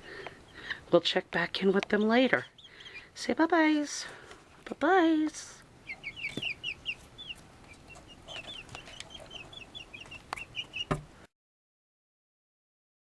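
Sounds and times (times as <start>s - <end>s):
chicks peeping: 0.0s - 4.4s, 5.2s - 11.1s.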